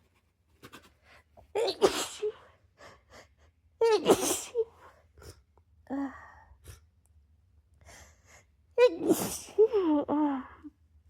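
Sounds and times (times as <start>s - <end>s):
person sneezing: 1.6s - 2.4s, 4.0s - 4.6s
quiet breaths: 4.7s - 7.0s, 7.7s - 8.7s.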